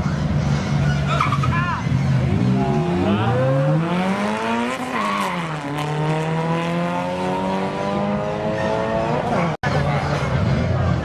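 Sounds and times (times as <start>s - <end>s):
race car engine at full throttle: 0.0s - 11.0s.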